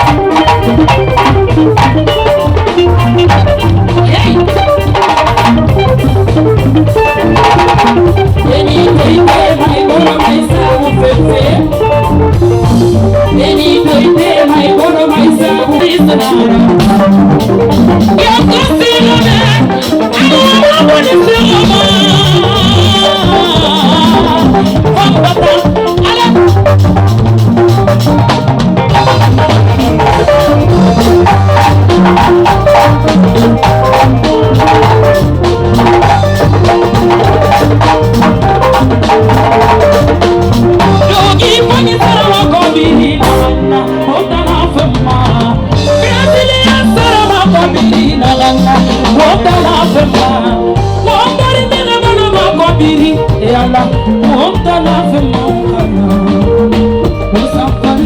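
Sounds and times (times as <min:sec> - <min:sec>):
loud dance music: 0:13.3 - 0:43.6.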